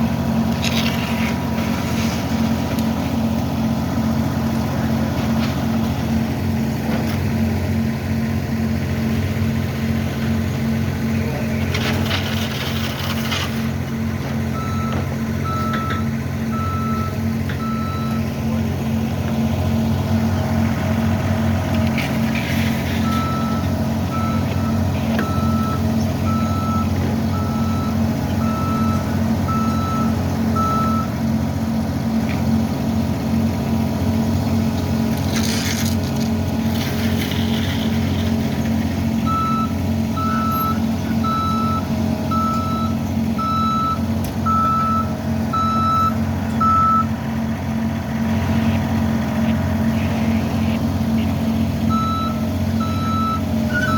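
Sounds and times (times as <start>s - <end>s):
diesel engine of heavy machinery: 0.0s - 53.9s
backup alarm beeping: 39.3s - 47.1s, 51.9s - 53.9s.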